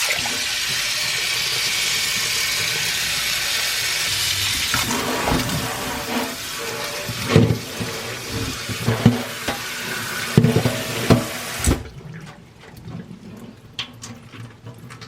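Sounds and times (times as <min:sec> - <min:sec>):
tap water running into sink: 0:00.0 - 0:15.0
kitchenware knocking on sink: 0:01.6 - 0:11.8.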